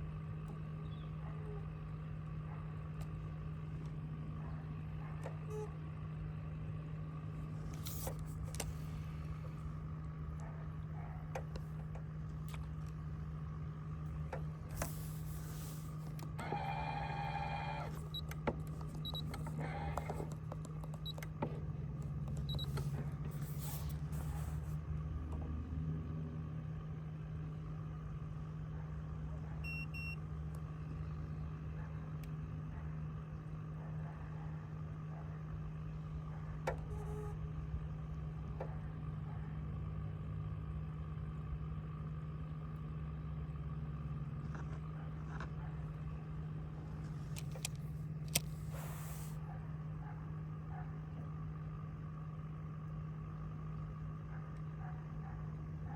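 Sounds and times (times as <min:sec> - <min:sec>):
boat motor humming: 0:00.0 - 0:55.9
clicks: 0:15.8 - 0:24.7, 0:46.9 - 0:49.4.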